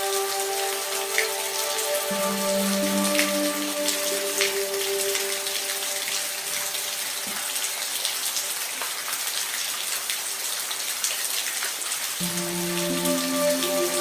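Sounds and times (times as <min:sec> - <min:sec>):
soft music pad: 0:00.0 - 0:08.7, 0:12.2 - 0:14.0
steady rain: 0:00.0 - 0:14.0.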